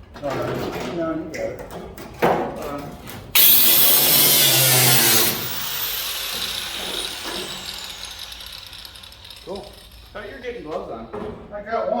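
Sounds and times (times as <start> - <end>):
power tool cutting sheet metal: 3.4 - 10.6
tool spinning down whine: 3.4 - 10.6.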